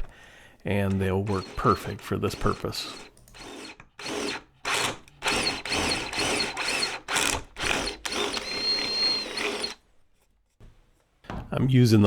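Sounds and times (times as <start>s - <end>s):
power drill bursts: 0.8s - 9.8s.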